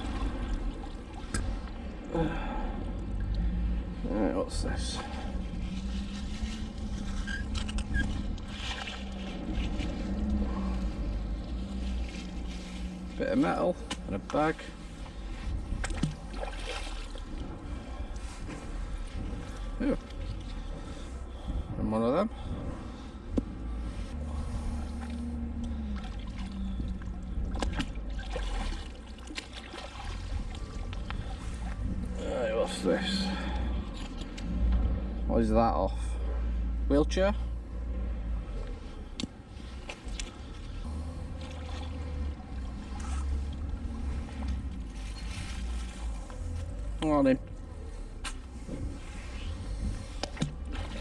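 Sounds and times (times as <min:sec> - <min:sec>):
low engine drone: 0:00.0 - 0:51.0
low steady hum: 0:00.0 - 0:51.0
water trickling and dripping: 0:24.6 - 0:34.9.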